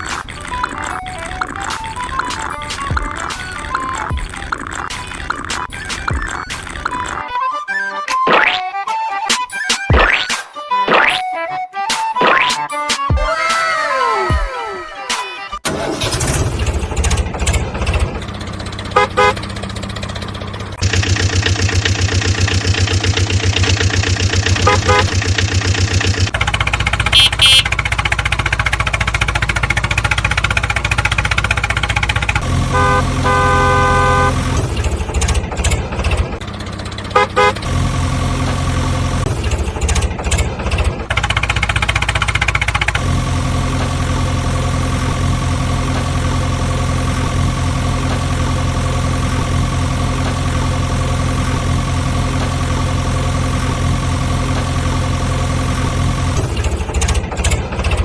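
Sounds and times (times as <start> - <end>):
vehicle engine: 0.0 - 7.2, 15.6 - 58.0
horn honking: 18.7 - 20.6, 24.4 - 26.3, 27.0 - 27.9, 32.4 - 34.7, 36.6 - 38.8.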